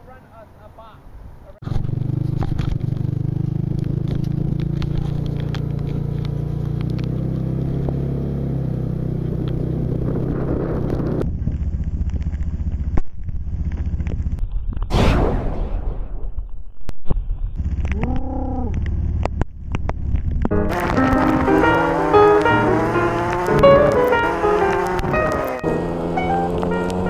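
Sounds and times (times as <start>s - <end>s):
low engine hum: 17.6s - 27.0s.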